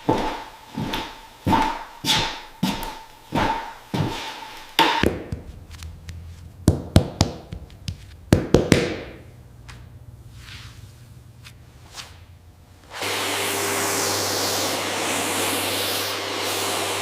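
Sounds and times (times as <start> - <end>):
sharp taps and knocks: 4.8 - 9.8.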